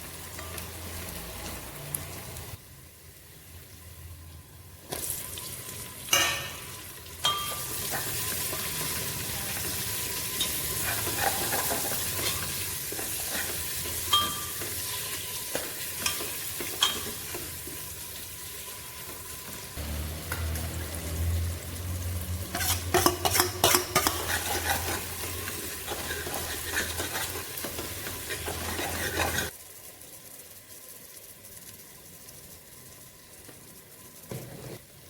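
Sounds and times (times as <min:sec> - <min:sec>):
spices sizzling in ghee: 0:00.0 - 0:35.0
spoon clinking and scraping pan: 0:06.1 - 0:08.9, 0:10.2 - 0:17.8, 0:22.4 - 0:29.5.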